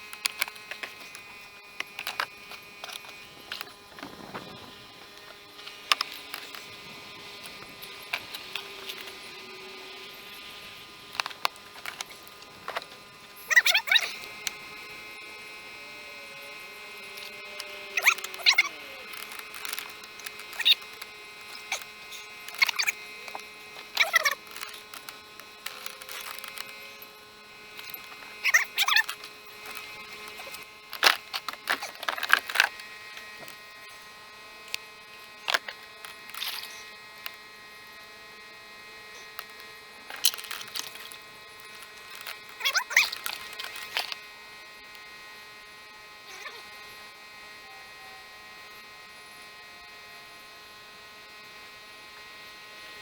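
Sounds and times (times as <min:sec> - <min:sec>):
electrical hum: 0:00.0 - 0:53.0.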